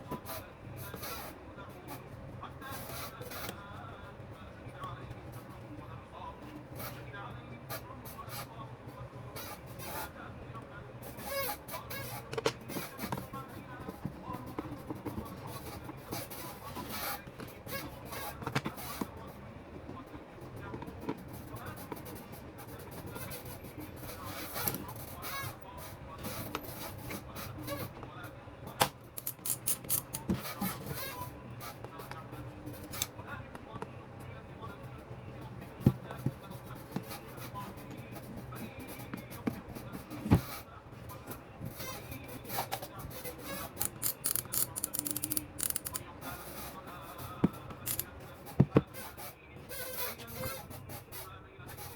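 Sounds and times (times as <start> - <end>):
tools clicking and scraping: 24.3 - 25.0, 29.1 - 30.8, 43.5 - 46.0, 47.8 - 48.1.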